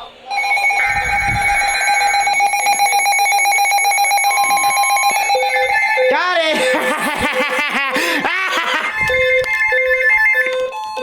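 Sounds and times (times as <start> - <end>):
digital header bursts: 0.0 - 7.6
electronic two-tone alarm: 0.0 - 11.0.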